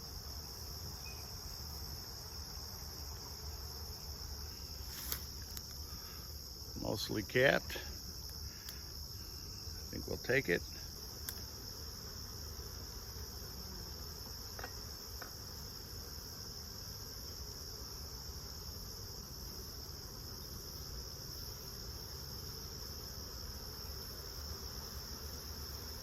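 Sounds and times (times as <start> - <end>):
insects trilling: 0.0 - 26.0
faint clicks: 11.2 - 11.5.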